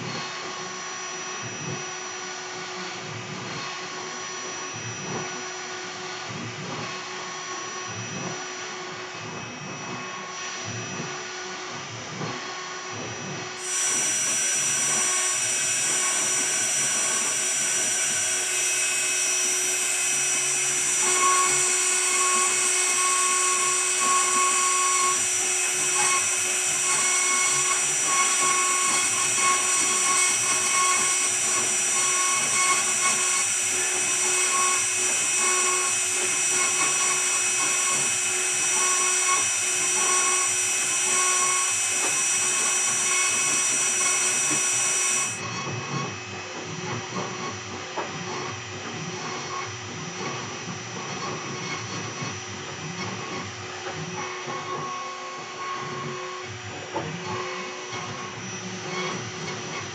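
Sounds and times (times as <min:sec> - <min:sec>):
router spindle whining: 0:06.8 - 0:59.9
short machine tone: 0:13.6 - 0:33.5, 0:34.2 - 0:46.4.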